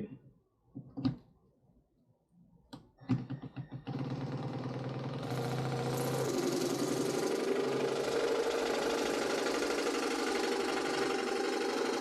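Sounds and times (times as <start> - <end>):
cordless jigsaw cutting: 3.8 - 12.0.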